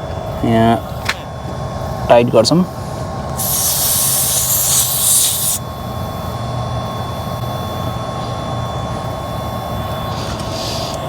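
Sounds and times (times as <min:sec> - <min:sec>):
air hissing from tire valve: 0:03.4 - 0:05.7.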